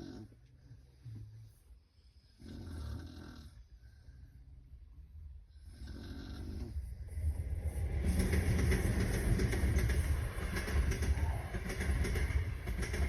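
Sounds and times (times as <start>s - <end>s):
moving vehicle rumbling: 4.6s - 13.0s.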